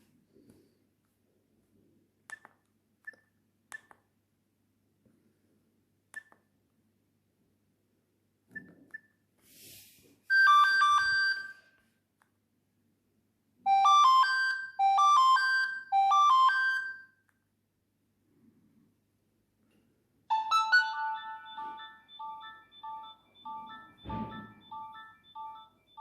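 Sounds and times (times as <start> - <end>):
mobile phone ringtone melody: 10.3 - 11.7, 13.7 - 17.2, 20.3 - 26.0.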